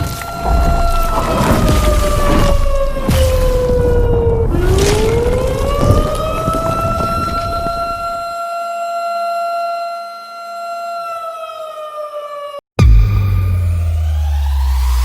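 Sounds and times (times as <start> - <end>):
siren wailing: 0.0 - 15.0
loud low rumbling: 12.8 - 15.0.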